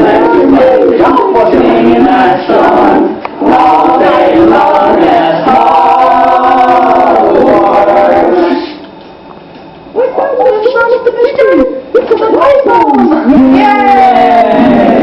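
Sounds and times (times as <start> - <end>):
voices singing together: 0.0 - 8.9, 12.9 - 15.0.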